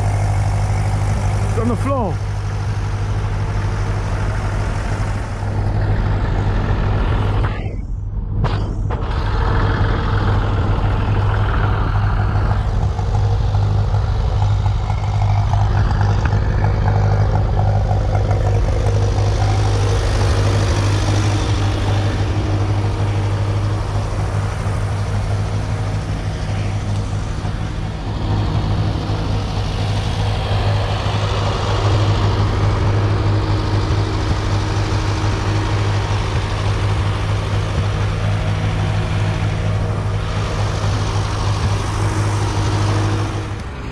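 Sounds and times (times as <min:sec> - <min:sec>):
tractor engine running: 0:00.0 - 0:43.9.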